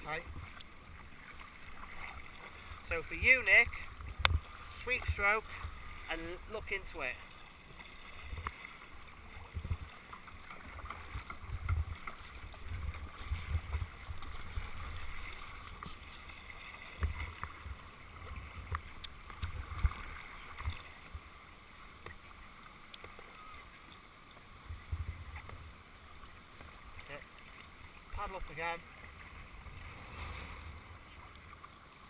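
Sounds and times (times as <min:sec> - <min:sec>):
paddle splashing in water: 0:00.0 - 0:32.0
wind rumbling on microphone: 0:02.7 - 0:06.8, 0:08.2 - 0:21.3, 0:24.6 - 0:25.8.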